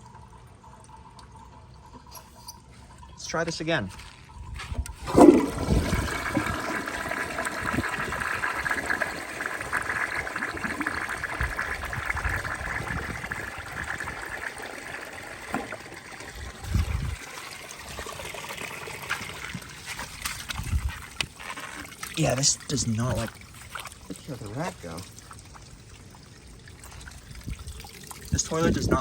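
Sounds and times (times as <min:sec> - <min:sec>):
toilet flushing: 0:04.8 - 0:29.0.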